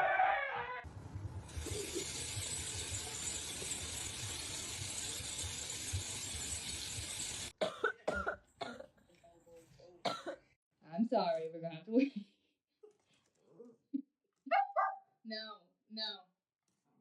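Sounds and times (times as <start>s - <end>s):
steady hiss over low rumble: 0.9s - 2.3s.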